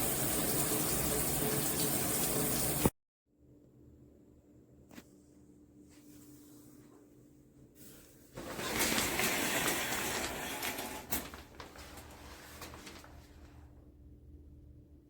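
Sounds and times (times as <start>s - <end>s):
shower spraying water: 0.0s - 2.9s.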